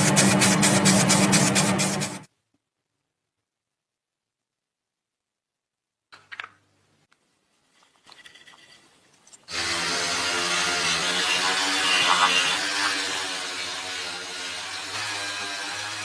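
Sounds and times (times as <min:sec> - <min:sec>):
power tool motor hissing: 0:09.5 - 0:16.0.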